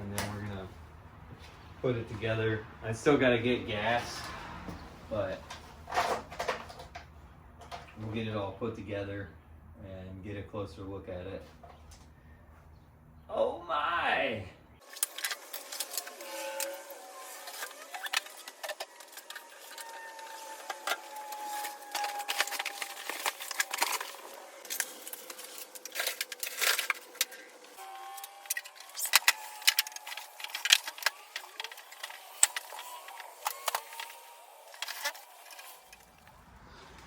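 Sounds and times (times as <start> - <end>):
packaging crinkles clicks and rattles: 14.8 - 36.5.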